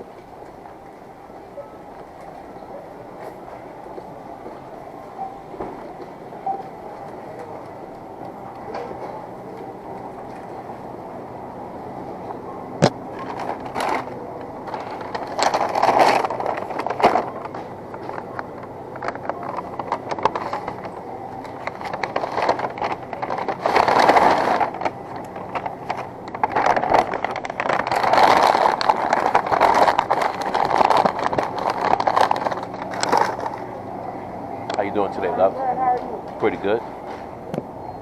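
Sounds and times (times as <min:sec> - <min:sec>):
shopping cart wheels rattling: 0:13.1 - 0:33.7.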